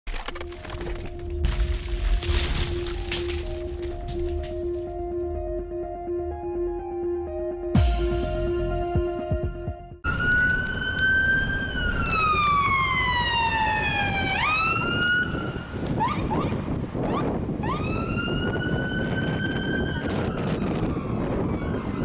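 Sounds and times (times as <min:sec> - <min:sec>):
emergency siren wailing: 0:10.0 - 0:22.0
siren yelps: 0:10.0 - 0:22.0.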